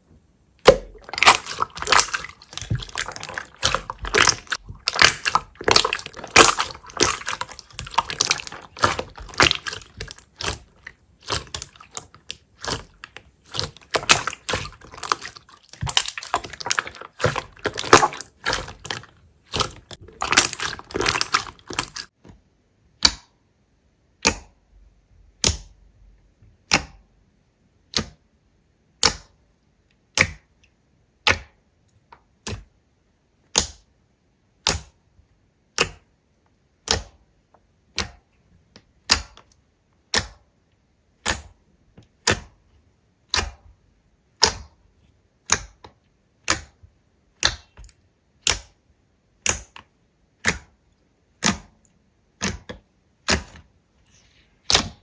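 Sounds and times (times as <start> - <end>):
slime popping under hand pressure: 0.6 - 22.1.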